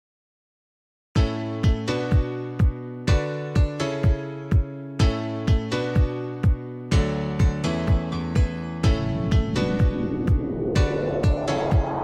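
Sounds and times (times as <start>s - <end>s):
background music with steady beat: 1.2s - 10.0s.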